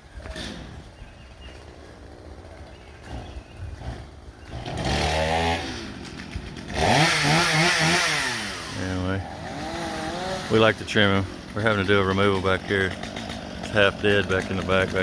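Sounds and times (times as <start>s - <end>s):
chainsaw engine revving: 1.5s - 15.0s.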